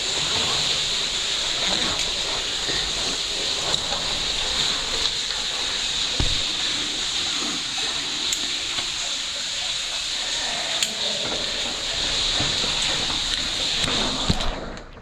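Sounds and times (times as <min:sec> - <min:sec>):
waterfall hissing: 0:00.0 - 0:14.4
dull thump: 0:06.2 - 0:06.6.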